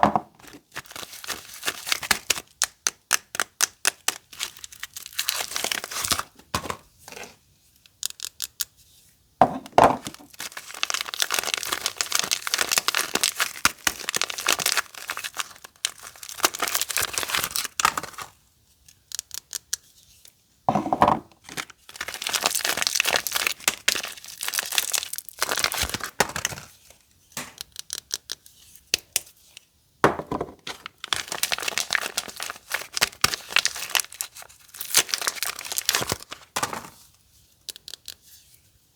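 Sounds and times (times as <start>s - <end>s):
wrappers crinkling and tearing: 0.4s - 6.4s, 10.1s - 18.4s, 21.4s - 26.8s, 30.6s - 37.0s.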